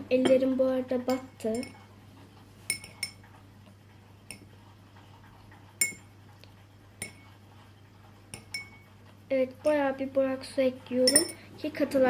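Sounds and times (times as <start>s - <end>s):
teaspoon clinking against container: 8.4s - 8.8s, 11.0s - 11.4s.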